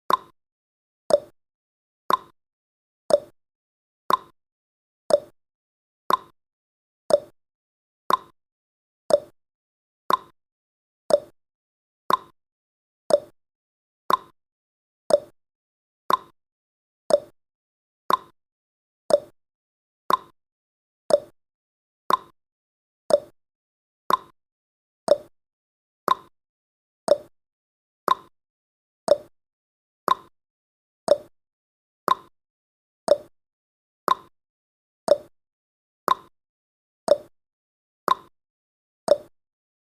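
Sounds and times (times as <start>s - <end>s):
timer ticking: 0.1s - 0.3s, 1.1s - 1.3s, 2.1s - 2.3s, 3.1s - 3.3s, 4.1s - 4.3s, 5.1s - 5.3s, 6.1s - 6.3s, 7.1s - 7.4s, 8.1s - 8.3s, 9.1s - 9.4s, 10.1s - 10.3s, 11.1s - 11.4s, 12.1s - 12.3s, 13.1s - 13.4s, 14.1s - 14.3s, 15.1s - 15.4s, 16.1s - 16.3s, 17.1s - 17.3s, 18.1s - 18.3s, 19.1s - 19.4s, 20.1s - 20.3s, 21.1s - 21.4s, 22.1s - 22.3s, 23.1s - 23.4s, 24.1s - 24.3s, 25.1s - 25.3s, 26.1s - 26.3s, 27.1s - 27.3s, 28.1s - 28.3s, 29.1s - 29.3s, 30.1s - 30.3s, 31.1s - 31.3s, 32.1s - 32.3s, 33.1s - 33.3s, 34.1s - 34.3s, 35.1s - 35.3s, 36.1s - 36.3s, 37.1s - 37.3s, 38.1s - 38.3s, 39.1s - 39.3s.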